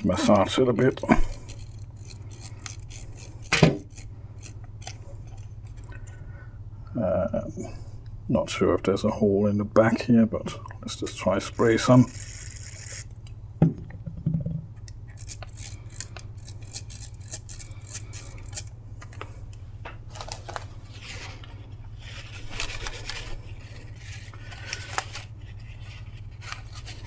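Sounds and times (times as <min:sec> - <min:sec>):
small plastic parts clicking: 0:00.2 - 0:05.9.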